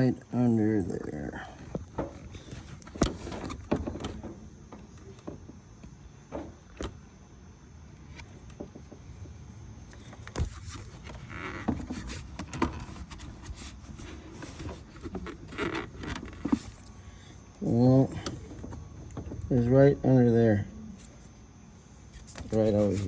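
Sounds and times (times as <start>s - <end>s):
hands handling parts and tools: 9.9s - 19.6s, 22.0s - 23.0s.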